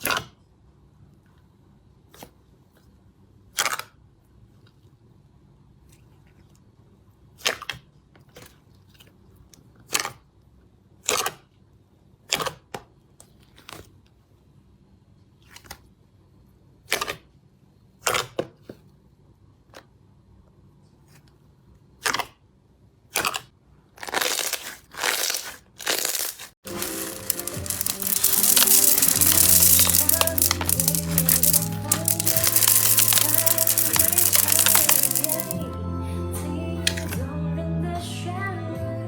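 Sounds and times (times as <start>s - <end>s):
slime squishing: 24.0s - 35.6s.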